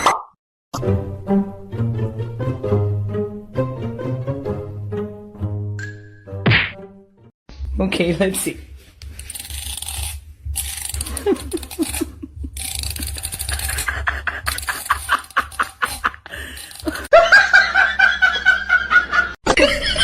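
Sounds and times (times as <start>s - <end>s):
person laughing: 11.0s - 20.0s.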